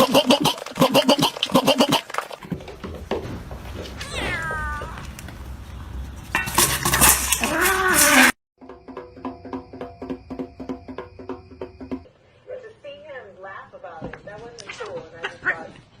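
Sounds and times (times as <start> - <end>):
cat meowing: 4.0 - 5.1
clattering: 6.2 - 8.3.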